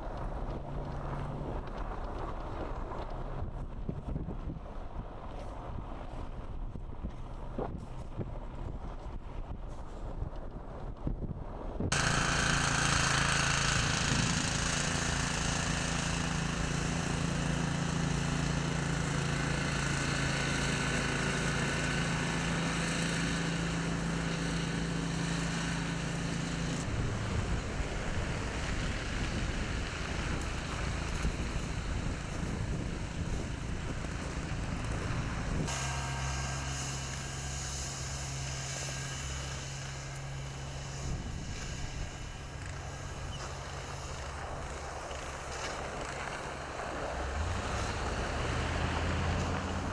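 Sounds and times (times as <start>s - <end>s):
vehicle engine humming: 11.9s - 49.9s
rushing wind and snow: 26.3s - 49.9s.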